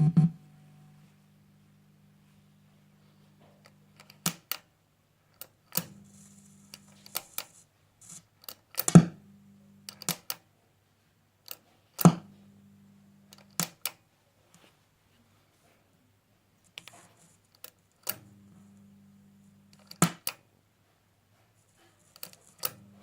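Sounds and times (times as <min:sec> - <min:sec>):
low mains hum: 0:00.0 - 0:23.0.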